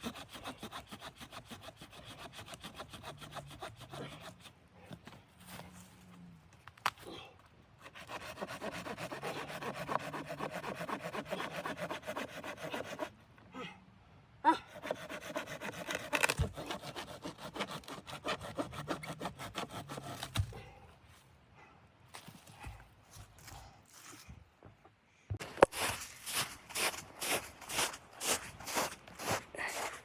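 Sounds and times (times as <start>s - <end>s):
hand saw cutting wood: 0.0s - 4.6s, 7.8s - 13.2s, 14.7s - 20.5s.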